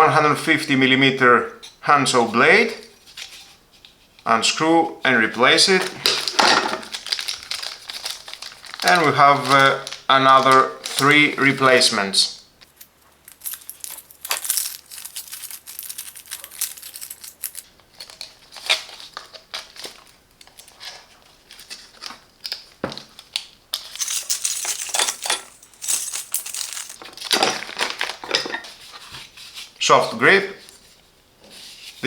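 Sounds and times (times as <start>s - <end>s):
plastic packaging crinkling: 5.7s - 11.2s, 12.6s - 29.7s
metal tools clinking: 23.8s - 28.8s.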